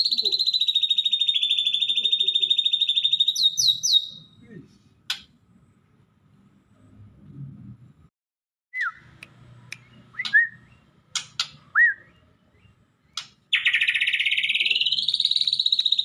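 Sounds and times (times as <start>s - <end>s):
songbird chips and whistles: 0.0s - 4.2s, 11.8s - 16.0s
songbird rapid rising trill: 13.5s - 16.0s.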